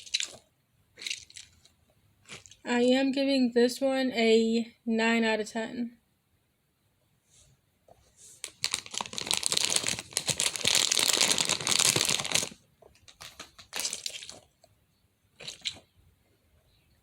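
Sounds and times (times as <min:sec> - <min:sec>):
crinkling rustling handling noise: 0:00.0 - 0:02.7, 0:07.9 - 0:14.8, 0:15.4 - 0:15.9.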